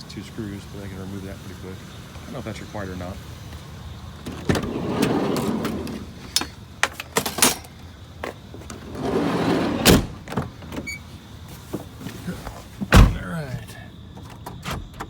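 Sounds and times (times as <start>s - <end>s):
scrap scraping and rustling: 11.5s - 12.9s.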